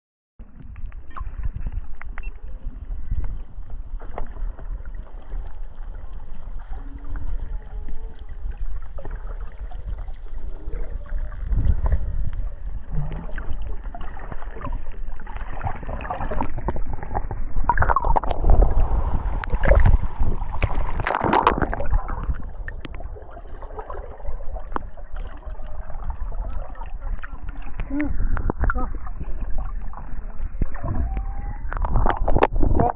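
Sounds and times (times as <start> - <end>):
muffled underwater rush: 0.4 - 32.9
bubbling clicks: 0.5 - 2.5, 8.1 - 32.9
faint gliding tones: 0.5 - 32.6
water splashing: 0.9 - 32.9.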